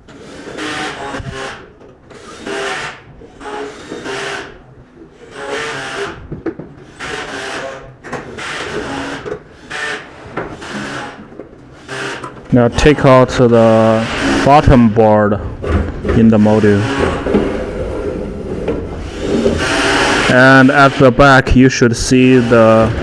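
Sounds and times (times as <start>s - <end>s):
screws scraping out of metal: 6.9s - 15.0s, 15.6s - 18.2s, 19.0s - 21.4s, 22.0s - 23.0s.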